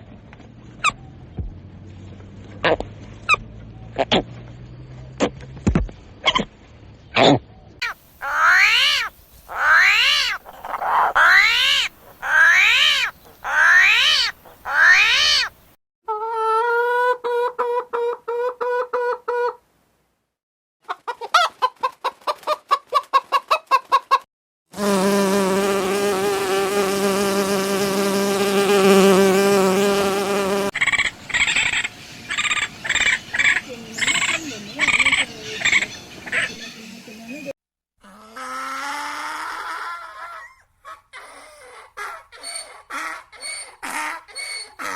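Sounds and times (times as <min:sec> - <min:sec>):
fast pulsed animal calls: 0:07.8 - 0:15.6
rising and falling chirps: 0:08.2 - 0:15.5.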